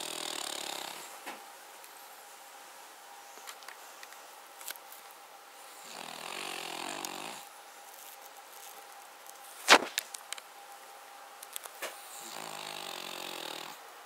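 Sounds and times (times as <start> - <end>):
dog snoring: 0.0 - 1.1, 5.6 - 7.5, 12.0 - 13.8.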